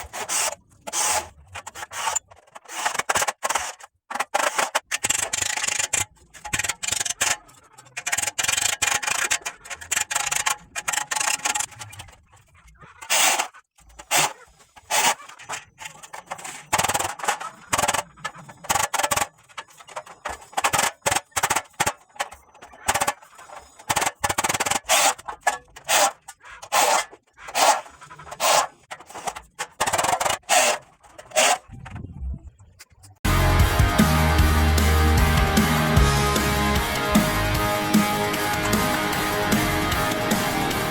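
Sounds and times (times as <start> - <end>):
scraping on steel: 0.0 - 31.9.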